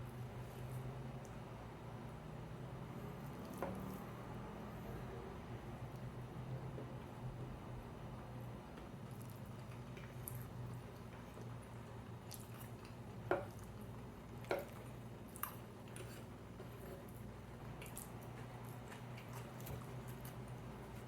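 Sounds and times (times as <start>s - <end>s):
person chewing: 12.2s - 13.8s, 14.4s - 21.0s.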